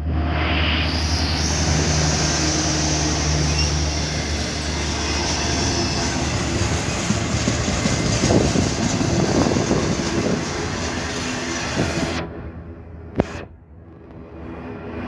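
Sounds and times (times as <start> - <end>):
rumbling rail noise: 0.0 - 15.0
train engine hum: 0.0 - 15.0
train cars clattering: 1.6 - 12.1.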